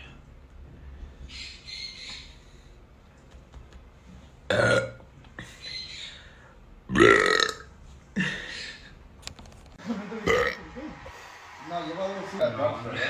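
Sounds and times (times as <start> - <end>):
man burping loudly: 4.5 - 5.0, 6.9 - 8.5, 10.2 - 10.6.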